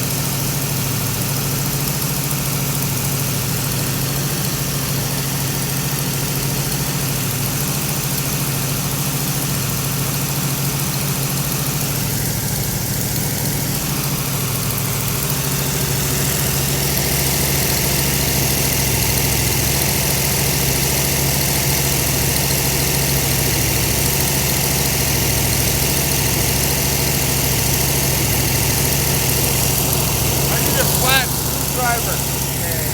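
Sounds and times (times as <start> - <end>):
car engine idling: 9.8 - 32.9.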